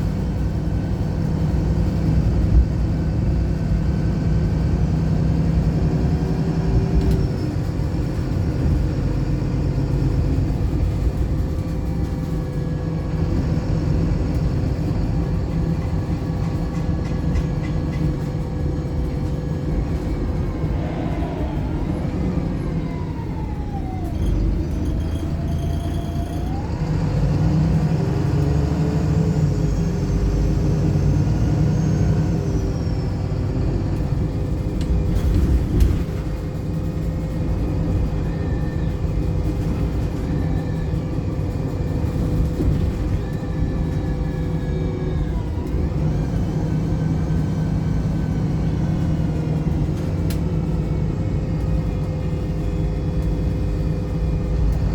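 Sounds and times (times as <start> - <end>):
bus engine running: 0.0 - 54.9
whine changing pitch: 19.9 - 26.6.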